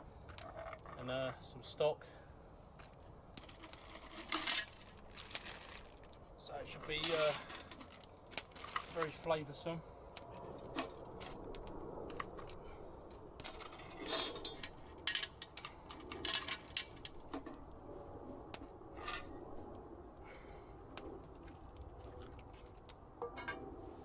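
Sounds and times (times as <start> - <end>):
packaging crinkling and rustling: 3.4 - 9.3.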